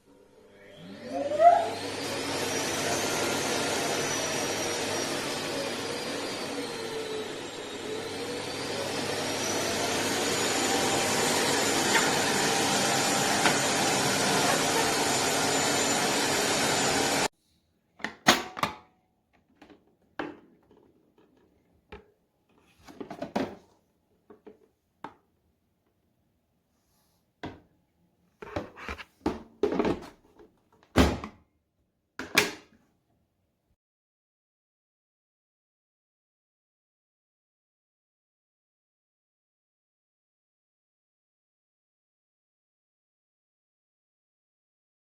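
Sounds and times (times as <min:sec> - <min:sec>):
vacuum cleaner whining: 0:00.0 - 0:17.3.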